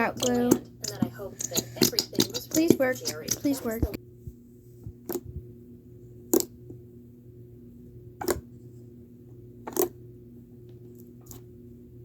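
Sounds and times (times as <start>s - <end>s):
slime clicking and squelching: 0.0s - 4.0s
steady low hum: 0.0s - 12.0s.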